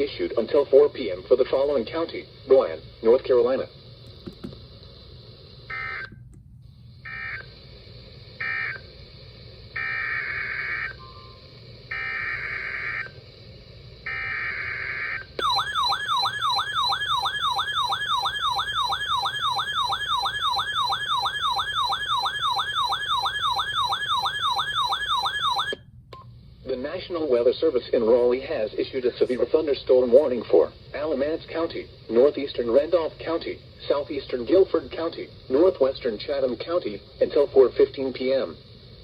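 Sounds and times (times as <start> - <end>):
alert data bursts: 15.4 - 25.8.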